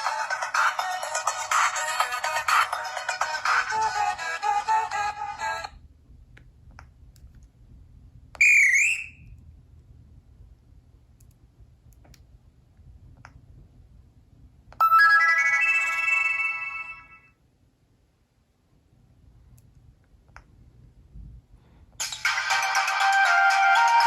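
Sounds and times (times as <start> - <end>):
bright phone chime: 14.8 - 17.3.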